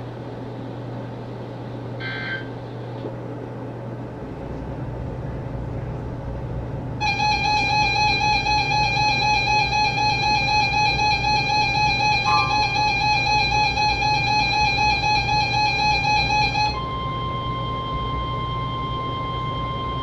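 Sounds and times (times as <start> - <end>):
two-tone attention signal: 11.8 - 15.7
warbling data tones: 12.1 - 13.7
radio hiss and hum: 12.3 - 12.8.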